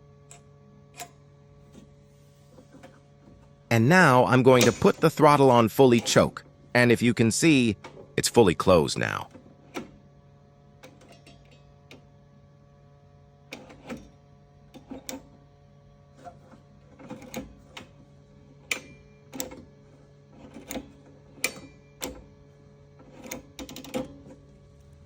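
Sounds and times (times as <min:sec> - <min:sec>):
faint steady hum: 0:00.0 - 0:25.0
lever clicks and knocks: 0:04.5 - 0:06.3.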